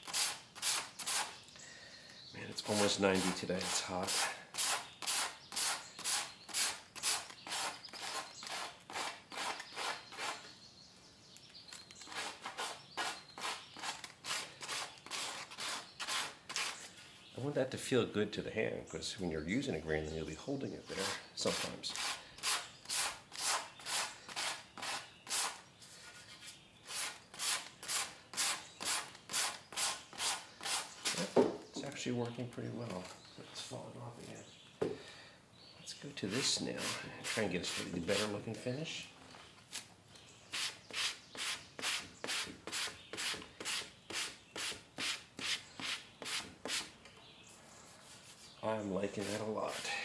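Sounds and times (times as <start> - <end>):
sandpaper rubbing on wood: 0.0 - 1.4, 2.6 - 10.4, 12.1 - 16.8, 20.9 - 26.2, 26.9 - 31.3, 36.3 - 38.4, 40.5 - 46.9, 49.1 - 49.9.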